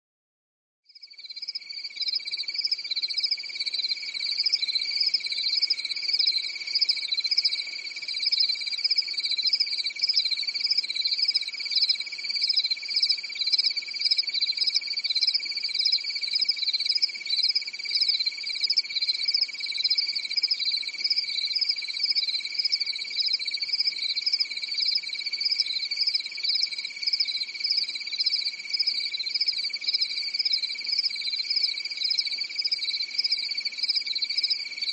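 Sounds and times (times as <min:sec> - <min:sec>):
crickets chirping: 0:01.0 - 0:34.9.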